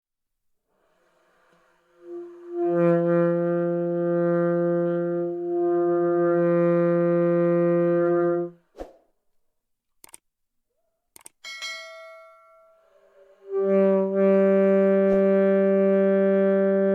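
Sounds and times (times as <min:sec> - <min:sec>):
saxophone long low note: 0:02.0 - 0:08.6, 0:13.4 - 0:16.9.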